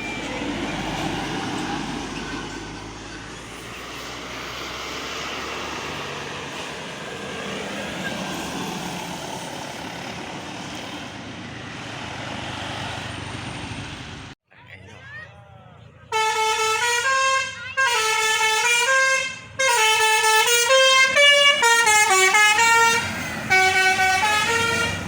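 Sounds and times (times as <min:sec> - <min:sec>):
road traffic passing: 0:00.0 - 0:25.0.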